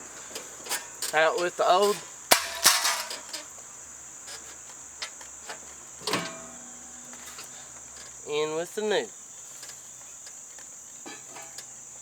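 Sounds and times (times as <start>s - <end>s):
crickets droning: 0.0s - 12.0s
metal clanking: 0.4s - 3.6s, 5.5s - 8.2s, 11.0s - 11.7s.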